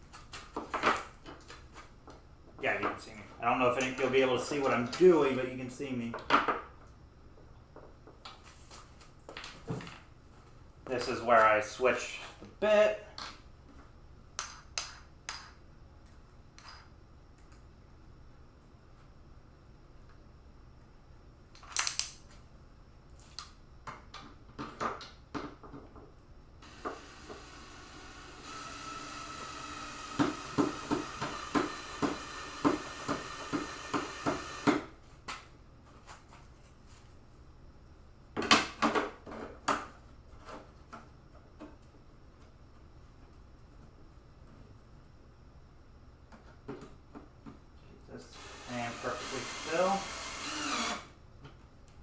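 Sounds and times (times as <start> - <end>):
cordless drill driving a screw: 26.6 - 34.8, 48.4 - 51.1.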